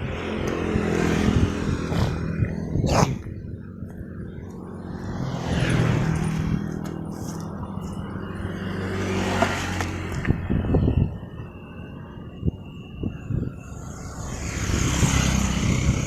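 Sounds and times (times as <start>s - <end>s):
steady engine hum: 0.0s - 16.0s
vehicles passing: 0.0s - 16.0s.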